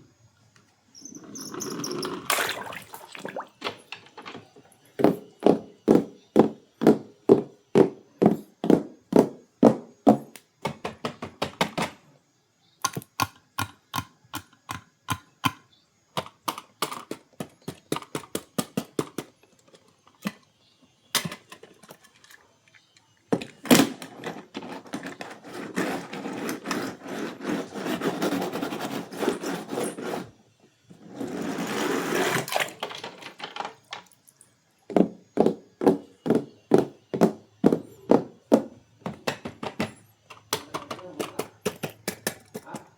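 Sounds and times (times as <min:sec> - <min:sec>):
clicks and taps on packaging: 0:12.8 - 0:15.6, 0:16.2 - 0:20.4, 0:34.9 - 0:42.9.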